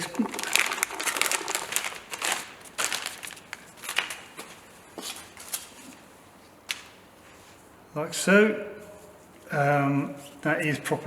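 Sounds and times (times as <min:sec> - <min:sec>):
packaging crinkling and rustling: 0:00.0 - 0:06.0.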